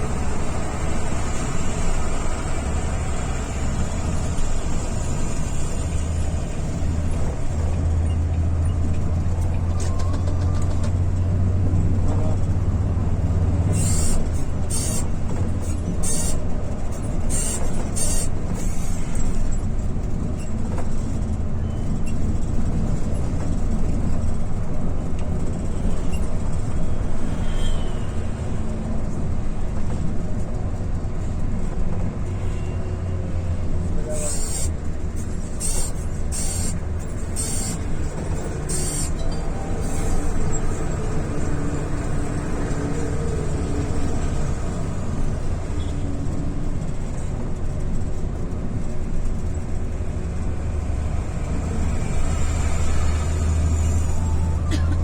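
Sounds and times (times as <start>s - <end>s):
bus engine running at low revs: 0.0s - 55.0s
short bursts of hiss: 34.2s - 34.7s, 35.6s - 36.8s, 37.4s - 37.8s, 38.7s - 39.2s.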